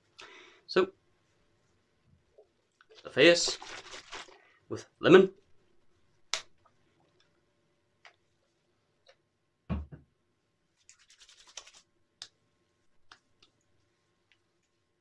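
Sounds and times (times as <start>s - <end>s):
knock with soft thud: 9.7s - 10.1s.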